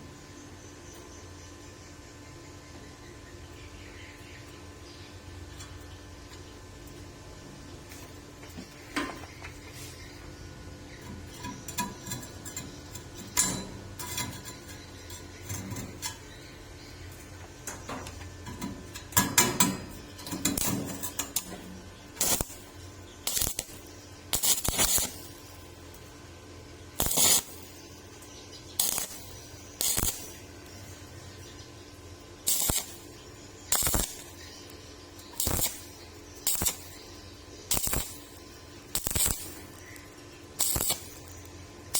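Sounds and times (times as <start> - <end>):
welding arc crackling: 10.9 - 41.9.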